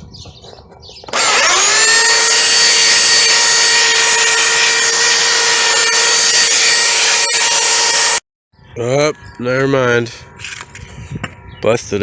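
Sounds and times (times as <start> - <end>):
power sander on wood: 1.1 - 8.2.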